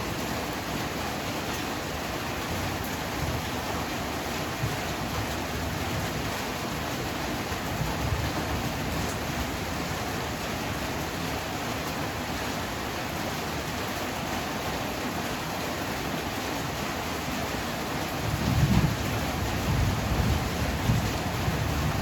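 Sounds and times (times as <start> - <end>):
heavy rain pouring: 0.0 - 22.0
rumble of thunder: 18.2 - 22.0.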